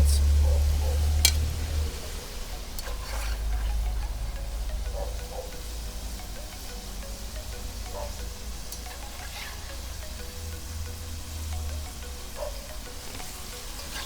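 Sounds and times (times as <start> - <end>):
fries sizzling in hot oil: 5.6 - 12.0.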